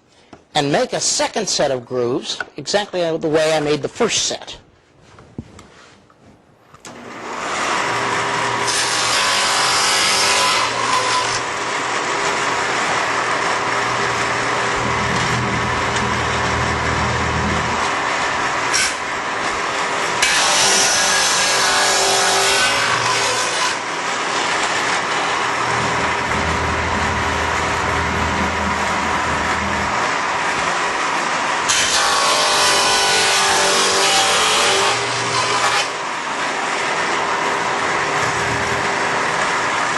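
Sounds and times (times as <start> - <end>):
table saw running: 6.9 - 39.9
saw blade cutting wooden board: 7.4 - 36.0.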